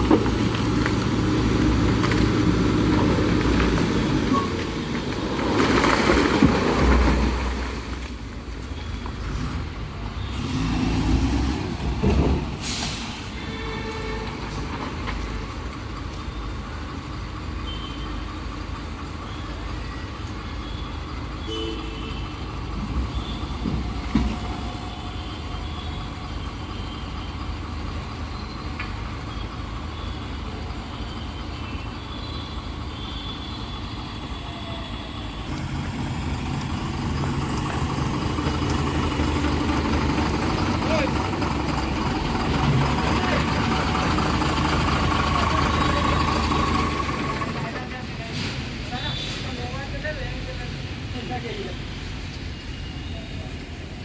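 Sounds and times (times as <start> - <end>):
heavy diesel engines rumbling: 0.0 - 54.0.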